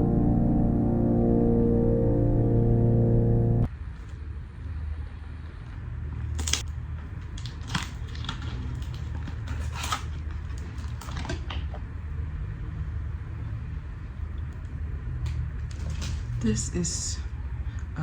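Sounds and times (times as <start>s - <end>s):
steady low hum: 0.0s - 8.2s, 11.8s - 18.0s
packaging crinkling and clicking: 6.4s - 11.9s.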